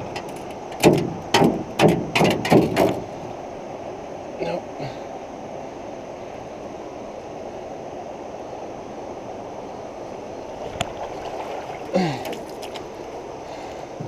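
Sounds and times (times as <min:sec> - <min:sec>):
sharp knock: 0:00.8 - 0:03.0
fast-flowing creek rushing: 0:03.3 - 0:14.0.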